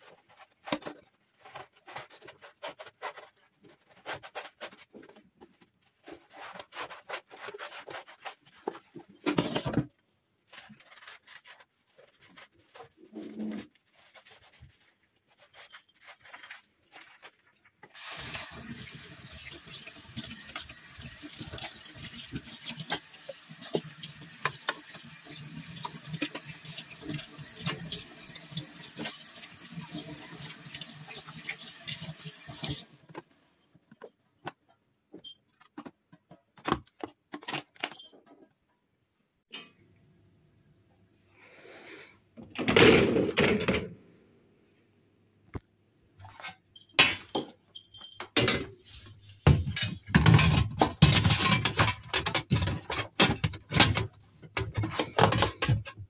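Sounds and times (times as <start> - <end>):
water running from a tap: 18.0 - 33.0.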